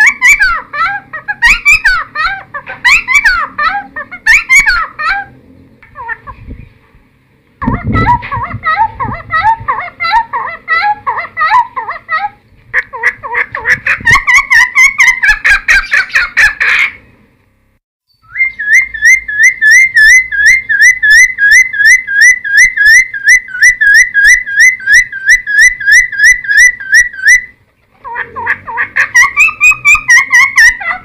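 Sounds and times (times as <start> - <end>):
bird singing: 0.0 - 6.8, 18.1 - 31.0
rapid upslurred bird whistles: 18.1 - 27.5.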